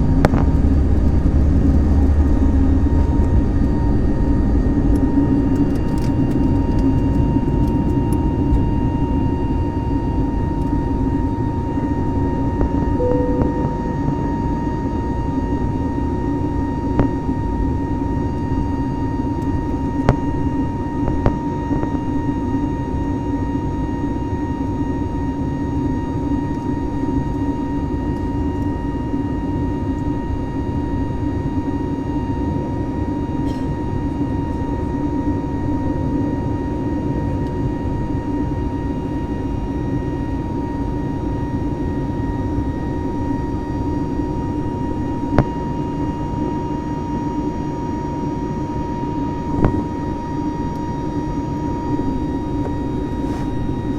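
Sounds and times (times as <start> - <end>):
jet engine drone in cabin: 0.0 - 53.9
constant whine: 12.9 - 15.9.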